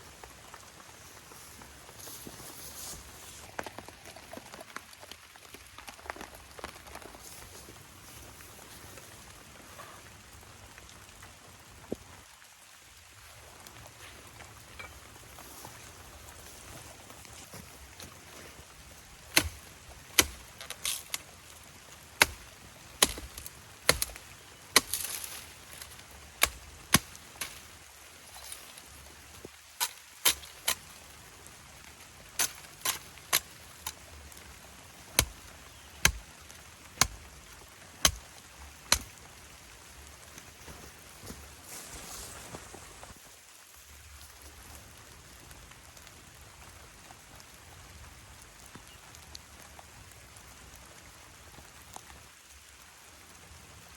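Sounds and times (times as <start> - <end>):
blade chopping wood: 20.2 - 21.2, 23.0 - 24.2, 32.4 - 34.0.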